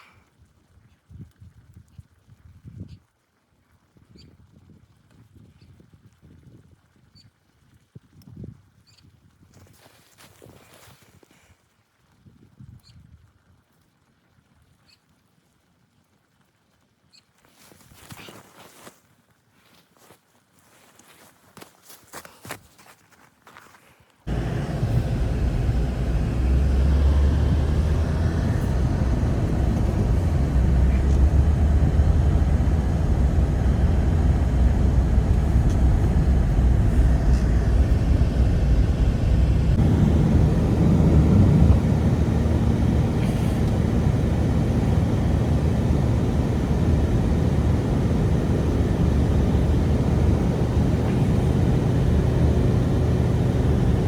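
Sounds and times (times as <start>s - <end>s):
strong blizzard wind: 24.3s - 54.0s.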